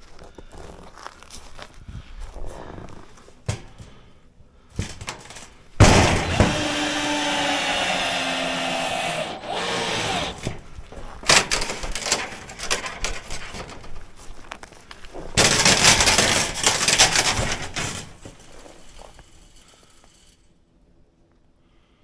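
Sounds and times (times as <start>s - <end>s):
wood and roofing sheets scraping: 4.8s - 19.4s
power tool whirring: 5.8s - 10.7s.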